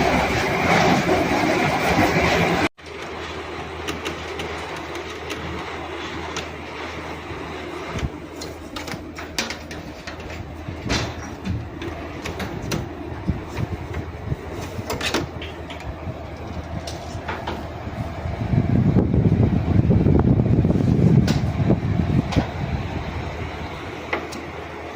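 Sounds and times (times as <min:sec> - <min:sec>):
air conditioner humming: 0:02.2 - 0:24.9
knocking and rattling clicks: 0:02.8 - 0:06.6, 0:08.0 - 0:13.0, 0:13.6 - 0:17.7.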